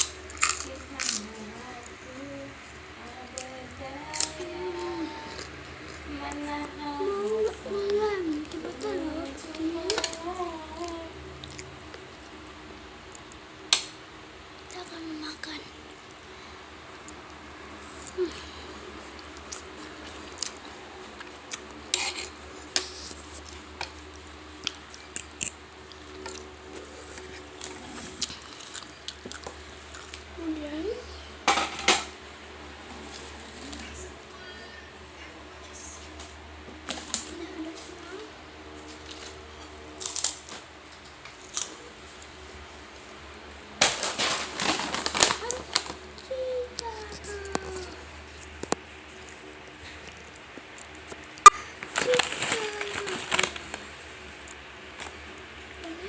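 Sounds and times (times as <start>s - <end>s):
crunchy snack being chewed: 0.0s - 1.4s, 19.1s - 30.3s
crunching snack chips: 0.0s - 2.0s, 19.1s - 30.2s, 38.9s - 41.8s, 43.8s - 55.2s
low steady hum: 0.0s - 56.0s.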